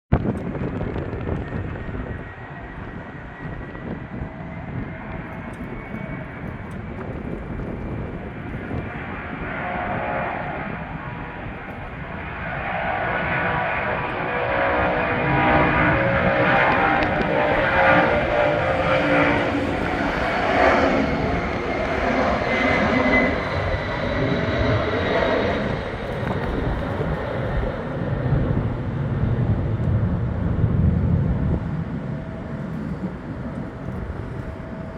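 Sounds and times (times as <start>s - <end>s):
jet engines at takeoff: 0.1s - 34.9s.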